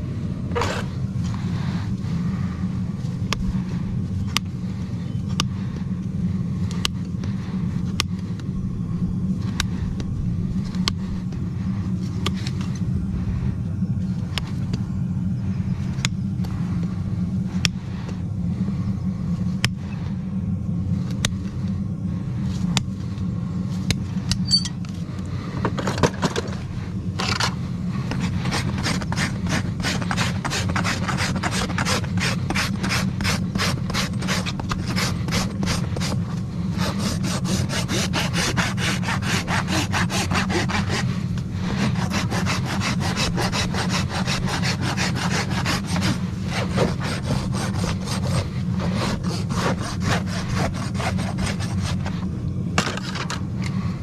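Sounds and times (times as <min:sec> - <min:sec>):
low hum: 0:00.0 - 0:54.0
rasp filing a hoof: 0:27.2 - 0:53.3.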